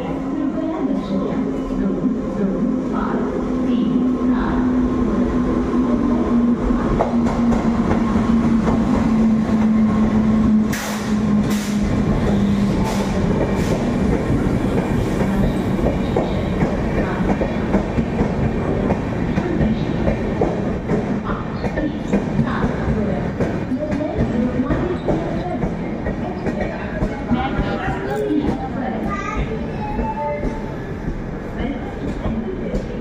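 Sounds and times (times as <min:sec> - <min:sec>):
train hum: 0:00.0 - 0:33.0
train rumble: 0:00.0 - 0:33.0.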